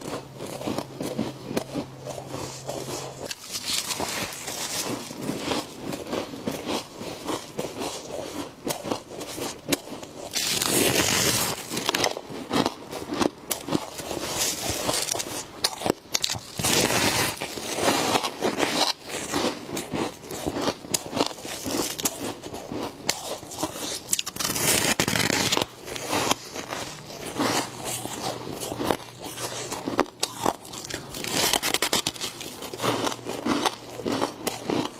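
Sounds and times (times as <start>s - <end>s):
frost being crunched: 3.2s - 5.7s, 9.7s - 12.2s, 23.4s - 32.8s.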